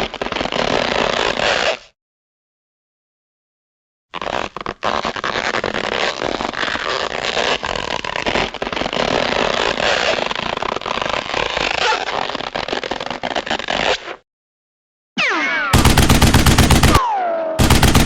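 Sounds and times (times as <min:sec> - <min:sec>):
rapid rattle of sharp cracks: 0:17.6 - 0:18.0.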